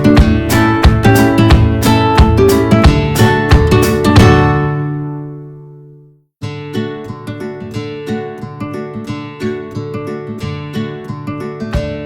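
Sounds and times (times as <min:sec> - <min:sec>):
strummed acoustic guitar: 0:00.0 - 0:05.8, 0:06.4 - 0:12.0.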